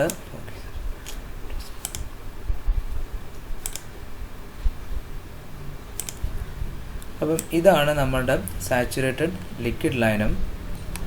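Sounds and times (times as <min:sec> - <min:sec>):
room rumble: 0:00.0 - 0:11.0
computer keyboard clicks: 0:01.8 - 0:02.1, 0:03.6 - 0:03.9, 0:06.0 - 0:06.3.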